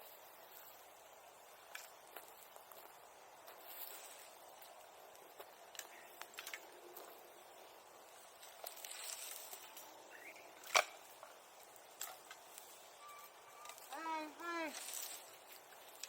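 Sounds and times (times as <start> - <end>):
bonfire hissing and crackling: 0.0 - 16.0.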